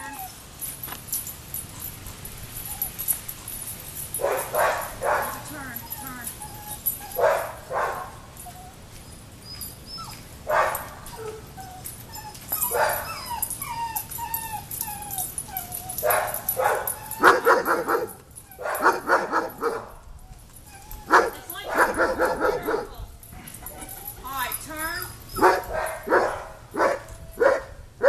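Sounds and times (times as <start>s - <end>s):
dog whining yelps: 0.0s - 0.4s, 1.8s - 3.2s, 4.2s - 22.8s, 25.1s - 27.8s
dog barking: 4.2s - 5.4s, 7.2s - 8.2s, 10.5s - 10.9s, 12.7s - 13.1s, 16.0s - 19.9s, 21.1s - 22.9s, 25.4s - 27.7s.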